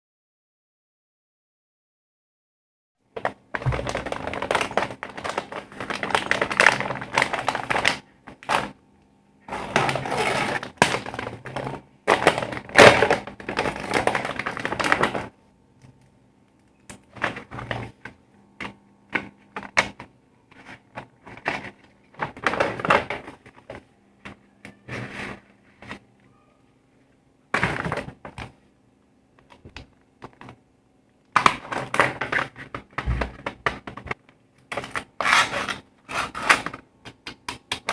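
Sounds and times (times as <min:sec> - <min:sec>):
packaging crinkling: 0:03.2 - 0:08.8, 0:09.5 - 0:15.3, 0:19.6 - 0:23.8, 0:31.3 - 0:36.8.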